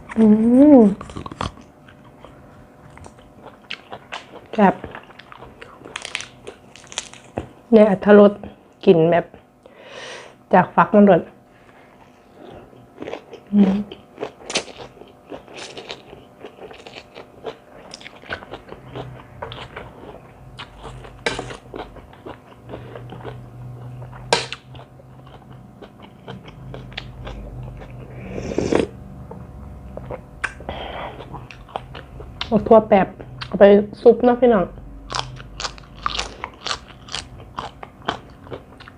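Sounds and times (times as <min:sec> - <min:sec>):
chewing crunches: 0:01.0 - 0:07.6, 0:12.3 - 0:28.0, 0:35.0 - 0:38.9.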